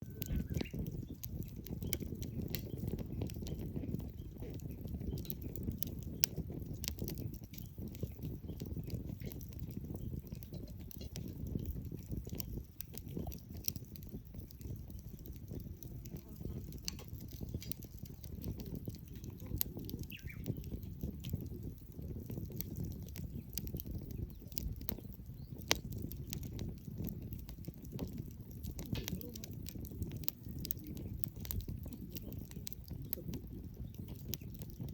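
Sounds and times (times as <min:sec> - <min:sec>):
campfire crackling and popping: 0:00.0 - 0:34.9.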